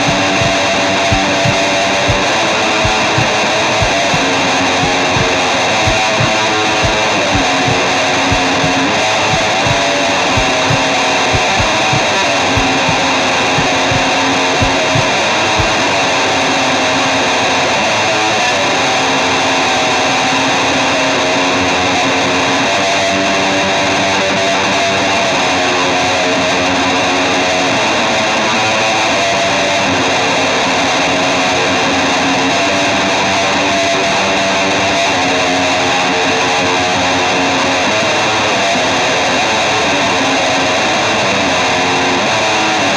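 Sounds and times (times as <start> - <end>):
low regular beat: 0.0 - 15.8
loud guitar music: 0.0 - 16.5.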